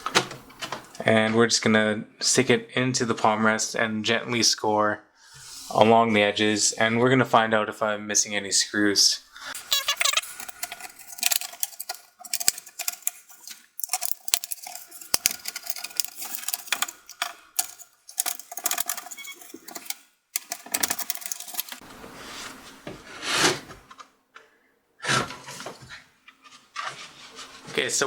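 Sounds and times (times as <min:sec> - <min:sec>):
rubbing and scraping: 0:09.3 - 0:23.9, 0:26.4 - 0:28.0
guitar pick scraping plastic seams: 0:09.5 - 0:21.9.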